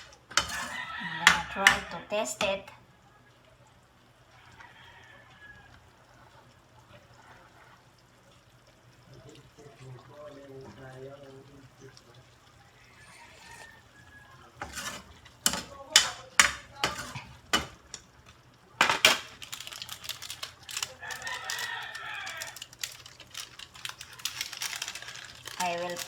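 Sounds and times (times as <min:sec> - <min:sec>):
utensil knocking on pan: 0:00.0 - 0:02.6, 0:14.6 - 0:18.0
rooster crowing: 0:00.4 - 0:02.1, 0:04.4 - 0:05.9, 0:12.9 - 0:14.6, 0:20.7 - 0:22.9.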